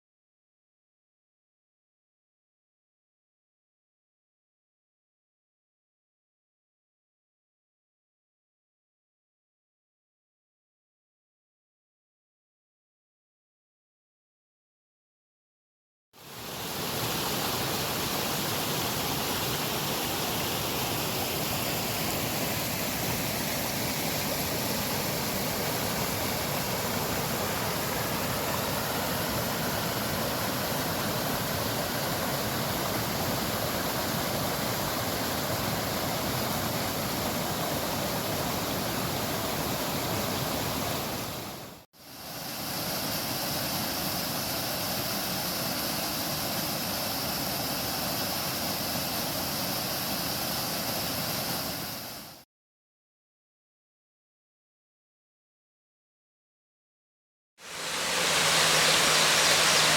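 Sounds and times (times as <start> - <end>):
waterfall rushing: 16.2 - 41.8, 57.6 - 59.9.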